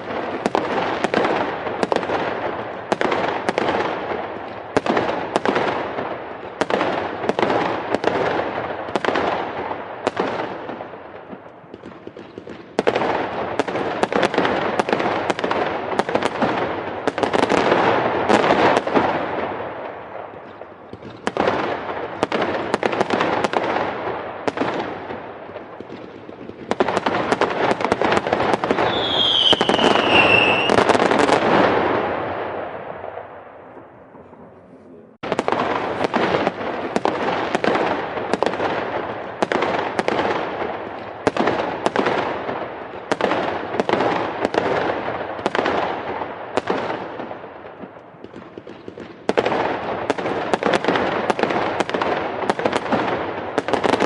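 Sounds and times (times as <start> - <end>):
fireworks bangs and crackles: 0.0 - 54.0
falling firework whistle: 28.6 - 31.7.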